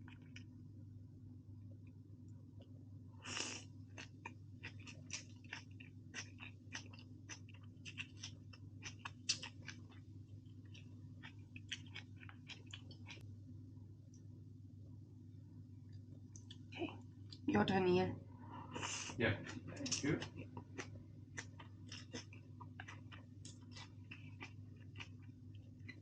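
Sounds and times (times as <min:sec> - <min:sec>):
food crunching while chewing: 0:00.0 - 0:00.5, 0:03.3 - 0:13.2, 0:19.5 - 0:26.0
low steady hum: 0:00.0 - 0:26.0.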